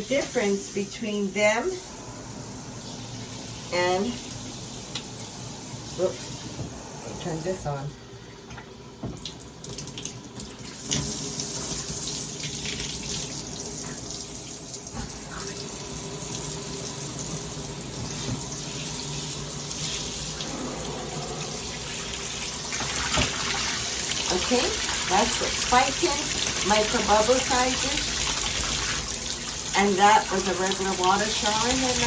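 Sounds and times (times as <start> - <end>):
shower head spraying water: 18.6 - 32.0.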